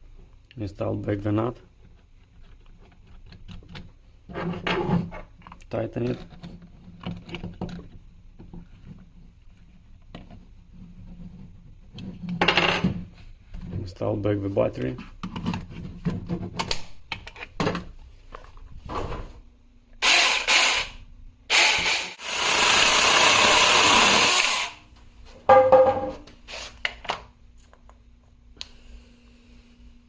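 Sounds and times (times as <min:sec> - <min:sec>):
electric chainsaw running: 0:20.0 - 0:20.9, 0:21.5 - 0:24.8.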